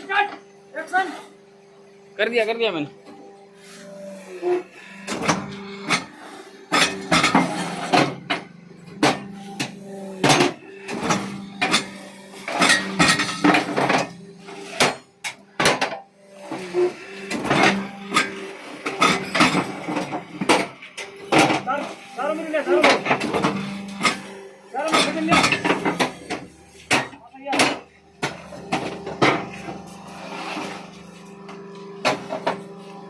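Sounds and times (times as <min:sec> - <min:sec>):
steady low hum: 0:22.8 - 0:33.0.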